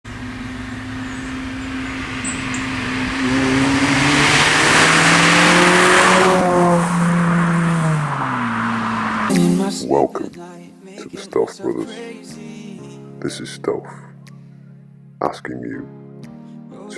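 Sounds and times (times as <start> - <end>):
car engine accelerating hard: 0.0 - 9.3.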